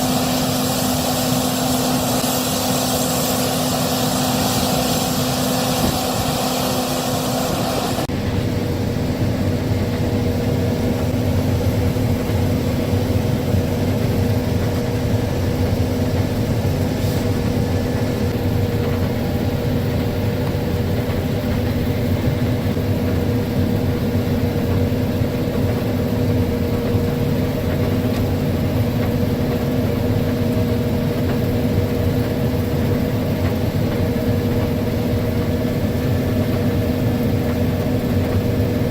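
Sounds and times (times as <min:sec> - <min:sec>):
loud high hiss: 0:00.0 - 0:08.1
combine engine humming: 0:00.0 - 0:38.9.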